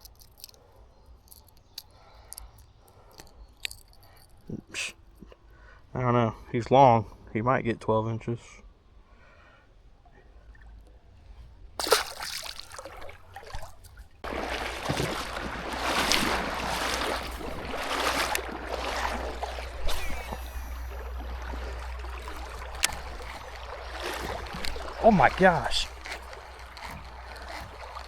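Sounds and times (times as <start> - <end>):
creek water splashing and trickling: 0.0 - 4.6, 11.8 - 28.0.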